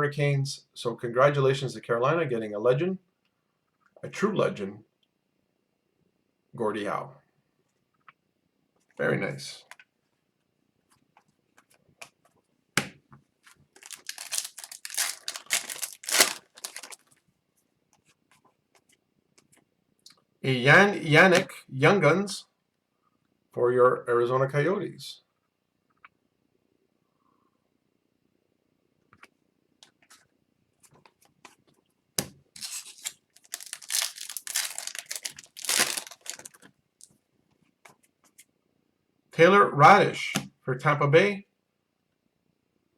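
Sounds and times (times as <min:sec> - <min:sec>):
foil wrapper crinkling: 0:13.8 - 0:17.1, 0:32.6 - 0:36.7.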